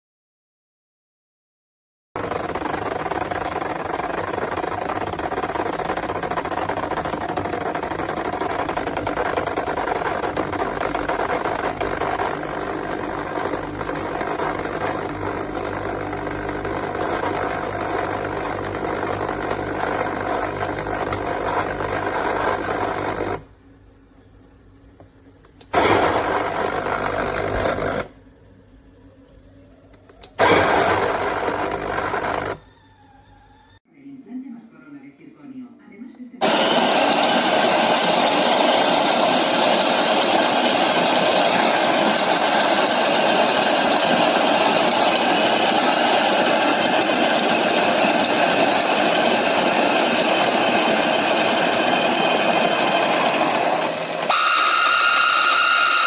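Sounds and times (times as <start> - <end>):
coffee grinder grinding beans: 2.2 - 23.5, 25.6 - 28.2, 30.2 - 32.7, 36.4 - 56.0.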